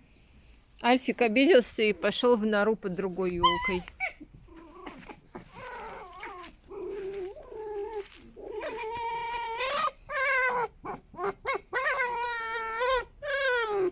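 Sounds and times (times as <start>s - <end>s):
foxes whining calls: 3.4s - 13.9s.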